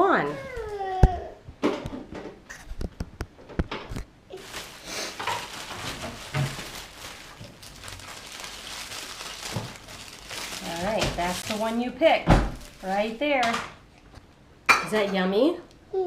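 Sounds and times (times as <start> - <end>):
paper rustling: 4.3 - 11.8, 12.5 - 13.2
packaging knocks and clicks: 4.4 - 11.7.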